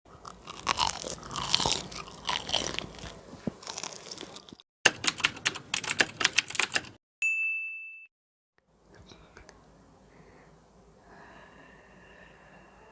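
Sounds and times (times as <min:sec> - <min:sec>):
crunching and chewing: 0:00.1 - 0:04.6.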